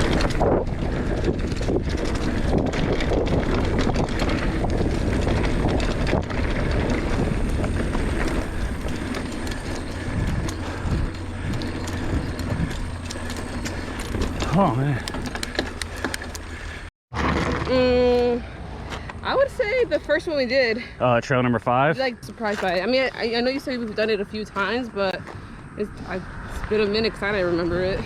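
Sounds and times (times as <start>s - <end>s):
bike rattling and knocking: 0.0s - 18.0s
bike tyres rolling on dirt: 0.0s - 18.3s.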